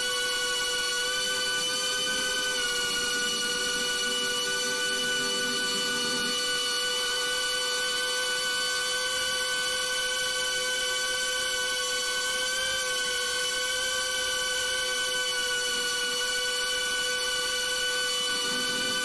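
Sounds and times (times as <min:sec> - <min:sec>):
drone motors whining: 0:00.0 - 0:11.1, 0:14.6 - 0:19.0.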